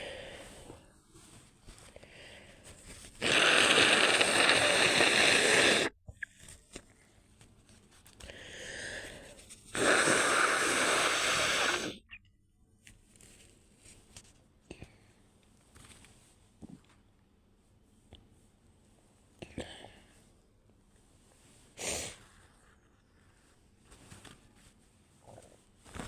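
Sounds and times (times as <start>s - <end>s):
person drawing breath: 0.0s - 0.8s, 2.0s - 5.9s, 8.2s - 12.0s
person blowing out air hard: 3.2s - 6.0s, 9.8s - 12.0s.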